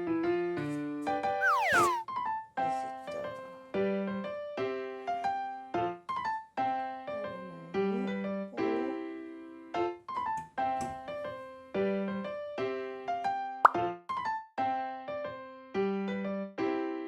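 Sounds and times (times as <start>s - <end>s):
light keyboard tune: 1.4s - 2.0s.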